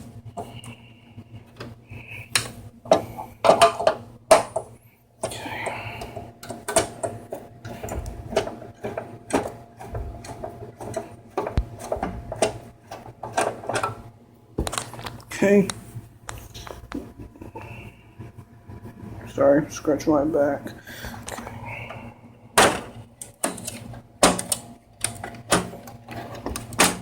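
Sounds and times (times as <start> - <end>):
clicks and knocks of handling: 6.0 - 14.0, 14.6 - 17.1, 22.6 - 27.0.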